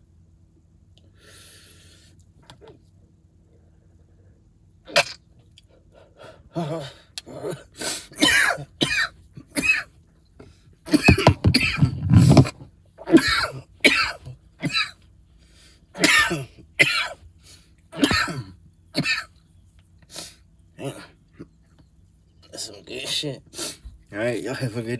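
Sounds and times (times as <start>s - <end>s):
man coughing: 6.6s - 9.9s, 10.9s - 12.5s, 13.1s - 15.0s, 16.0s - 17.2s, 18.0s - 19.3s.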